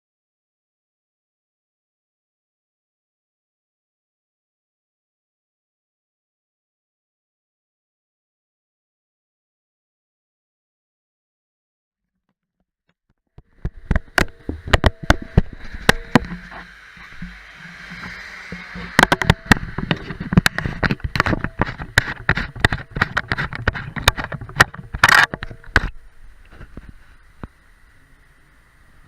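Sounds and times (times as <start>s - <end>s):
sharp clicks and knocks: 13.4s - 27.6s
faint steady hiss: 13.4s - 29.0s.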